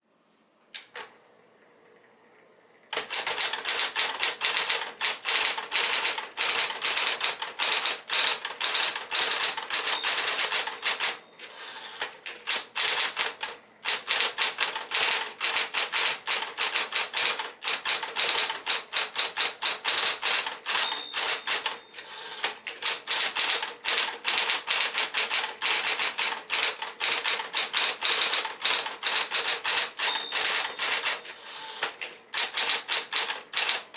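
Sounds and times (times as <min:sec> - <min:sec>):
electric typewriter keystrokes: 0:02.9 - 0:33.9
high ringing tone: 0:09.8 - 0:11.8, 0:20.8 - 0:22.4, 0:30.0 - 0:31.3.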